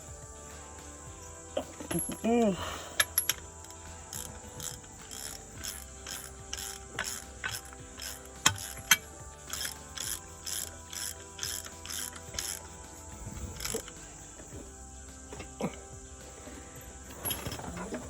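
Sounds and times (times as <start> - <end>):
ratchet wrench clicking: 3.0 - 14.5.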